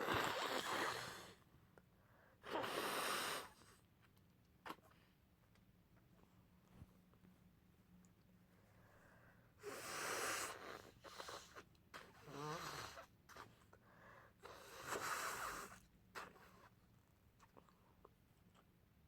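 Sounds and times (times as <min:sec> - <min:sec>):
nose blowing into tissue: 0:00.0 - 0:01.4, 0:02.4 - 0:03.6, 0:09.6 - 0:13.5, 0:14.4 - 0:16.4.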